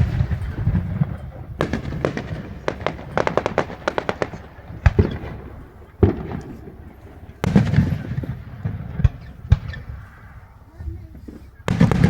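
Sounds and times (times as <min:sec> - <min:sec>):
firework bangs: 0:00.0 - 0:12.0
fireworks crackling pops: 0:01.6 - 0:10.5.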